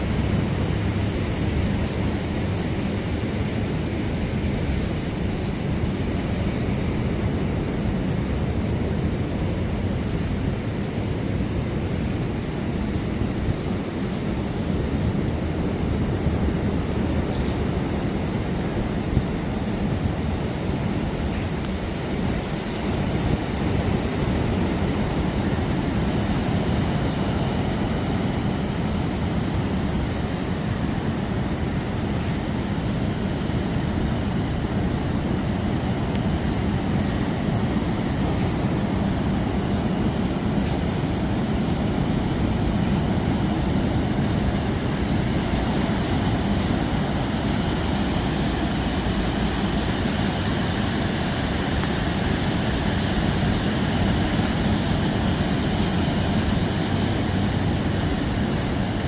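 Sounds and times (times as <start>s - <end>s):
ocean surf: 0.0s - 59.0s
wind roaring: 0.0s - 59.0s.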